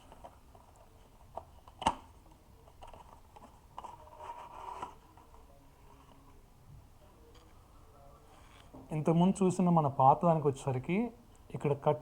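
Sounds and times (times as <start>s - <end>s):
soft scraping and rustling: 7.2s - 8.9s.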